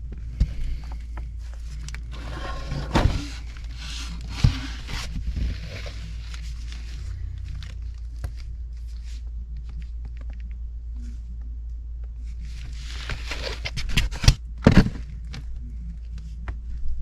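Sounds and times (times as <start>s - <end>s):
rustling and scraping: 2.1s - 3.4s.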